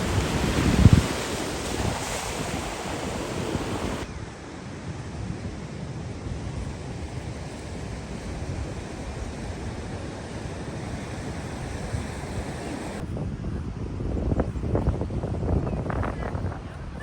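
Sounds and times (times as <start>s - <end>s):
ocean surf breaking: 0.0s - 4.1s, 7.4s - 13.0s
wind buffeting microphone: 0.0s - 4.2s, 6.2s - 17.0s.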